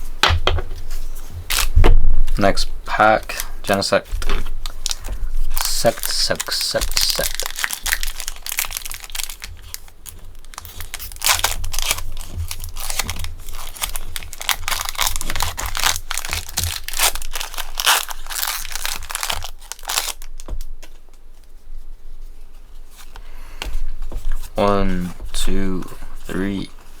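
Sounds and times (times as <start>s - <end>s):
foil wrapper crinkling and tearing: 1.5s - 21.0s.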